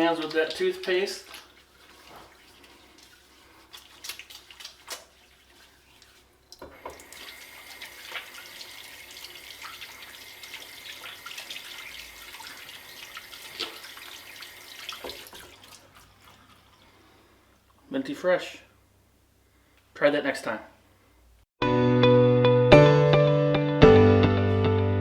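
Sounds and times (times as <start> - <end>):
tap water running over hands: 0.0 - 17.0
wet hands rubbing: 0.0 - 17.8.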